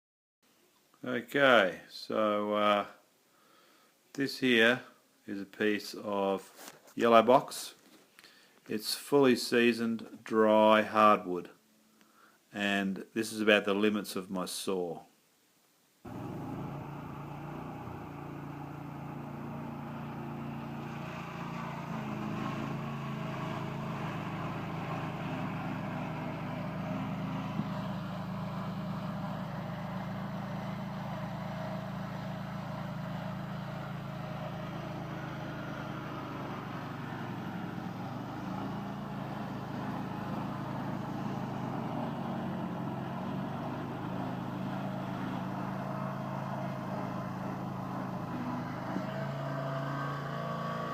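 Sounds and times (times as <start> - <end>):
sawmill blade cutting hardwood: 16.1 - 50.9.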